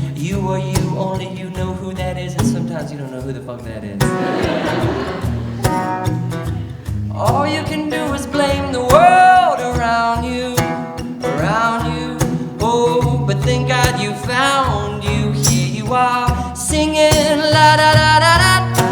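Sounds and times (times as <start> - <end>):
guitar: 0.0 - 18.9
steady beat: 4.0 - 11.4
person singing: 6.6 - 18.9.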